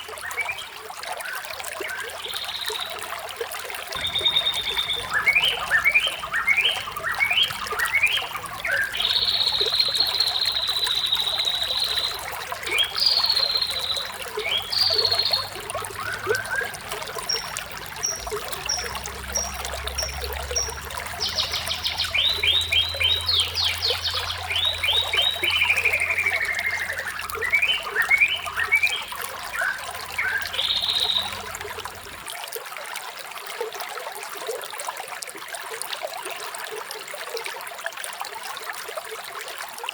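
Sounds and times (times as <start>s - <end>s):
running water trickling: 0.0s - 39.9s
songbirds singing: 1.8s - 3.3s, 4.0s - 32.2s.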